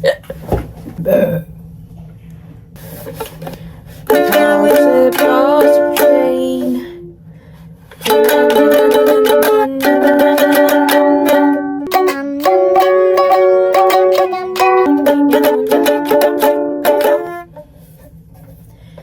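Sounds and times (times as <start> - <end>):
ukulele strummed in chords: 4.1 - 7.1, 8.0 - 17.6.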